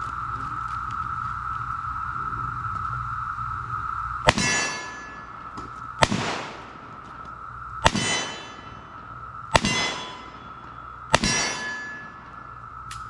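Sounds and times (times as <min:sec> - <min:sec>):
metal target ringing clang: 0:04.3 - 0:06.7, 0:07.8 - 0:13.0
revolver shots: 0:04.3 - 0:07.1, 0:07.8 - 0:12.4.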